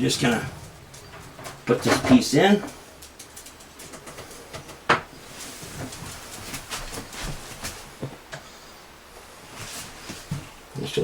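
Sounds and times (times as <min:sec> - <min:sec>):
light metal clicks and rattles: 0:00.2 - 0:04.9.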